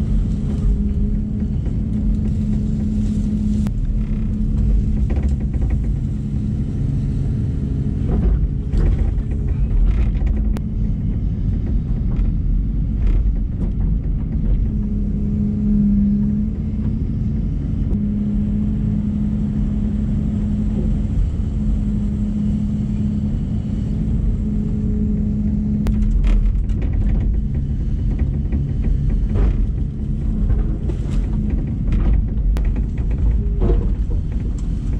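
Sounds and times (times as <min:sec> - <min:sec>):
machine knocks and clanks: 0:00.0 - 0:15.4, 0:24.7 - 0:34.9
excavator diesel engine running: 0:00.0 - 0:34.9.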